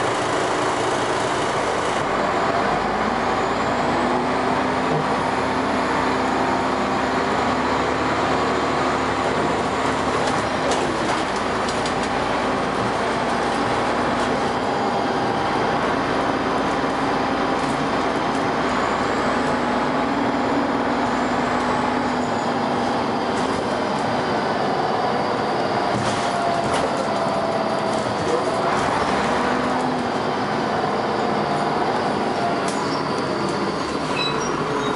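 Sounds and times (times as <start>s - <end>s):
bus diesel engine running: 0.0s - 34.9s.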